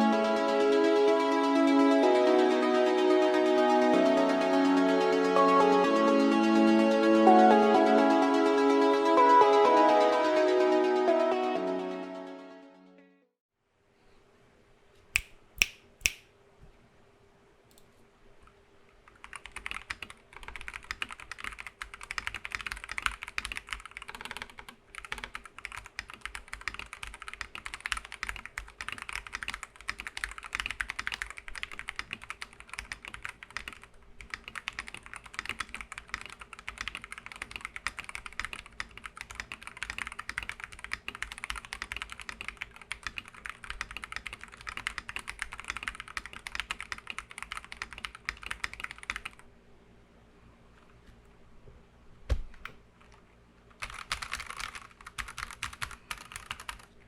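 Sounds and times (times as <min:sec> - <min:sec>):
fast mechanical keyboard typing: 0:19.0 - 0:49.4, 0:53.8 - 0:56.9.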